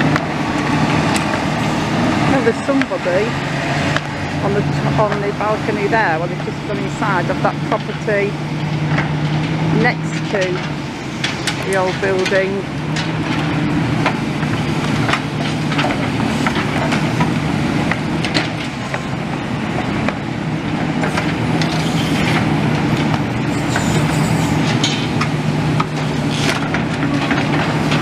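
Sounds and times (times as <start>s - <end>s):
excavator diesel engine running: 0.0s - 28.0s
metal clanks and knocks: 23.8s - 28.0s.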